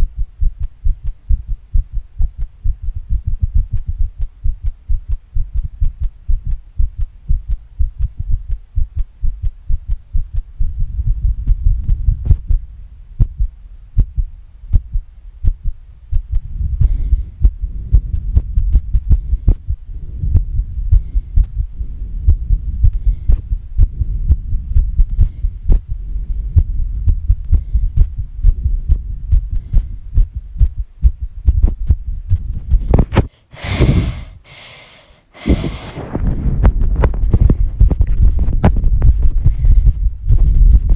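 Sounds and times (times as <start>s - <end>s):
fast heartbeat thumps: 0.0s - 40.9s
breathing: 16.8s - 17.5s, 20.9s - 21.6s, 22.9s - 23.6s, 25.1s - 25.9s, 27.5s - 28.3s, 29.5s - 30.2s, 33.3s - 36.2s, 39.4s - 40.0s.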